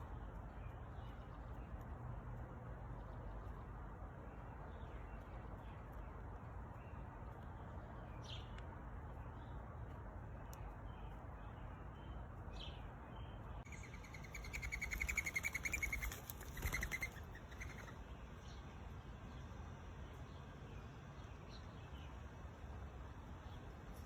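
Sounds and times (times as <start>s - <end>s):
songbirds chirping and trilling: 0.0s - 24.0s.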